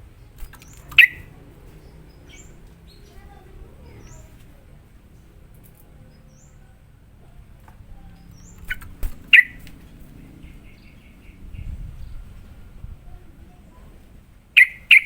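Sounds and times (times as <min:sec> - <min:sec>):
faint high bird chirps: 0:00.4 - 0:04.6, 0:08.0 - 0:12.6, 0:14.6 - 0:15.0
bird sharp call notes: 0:00.6 - 0:01.3, 0:08.4 - 0:11.3, 0:14.6 - 0:15.0.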